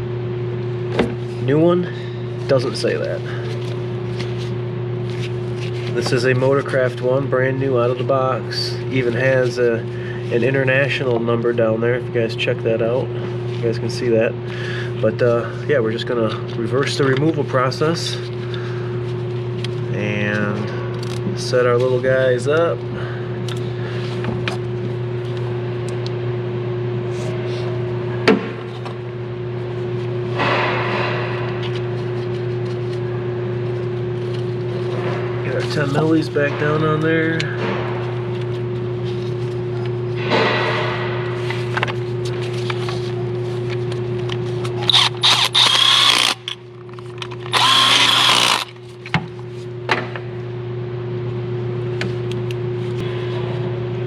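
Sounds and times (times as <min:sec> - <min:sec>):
mechanical hum: 0:00.0 - 0:54.0
power tool running: 0:44.8 - 0:46.6, 0:47.4 - 0:48.8.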